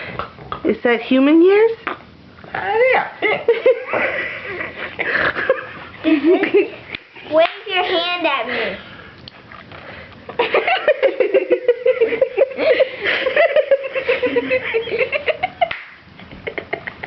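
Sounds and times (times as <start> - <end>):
high-pitched giggling: 13.5 - 15.6.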